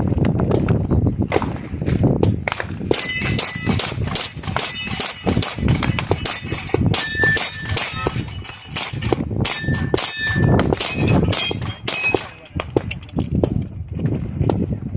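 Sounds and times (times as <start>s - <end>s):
rapid pistol shots: 1.3s - 12.9s
steel plates clanging: 3.0s - 12.6s.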